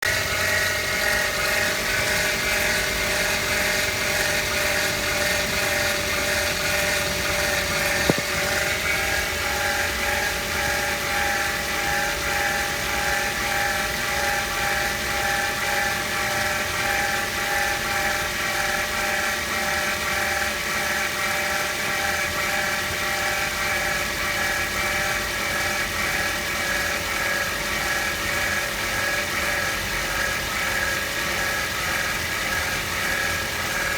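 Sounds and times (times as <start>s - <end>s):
car engine running: 0.0s - 9.2s
whirring whine: 0.0s - 33.9s.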